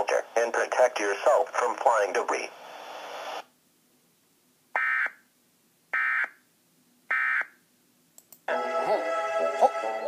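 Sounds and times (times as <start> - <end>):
music: 8.5 - 10.0.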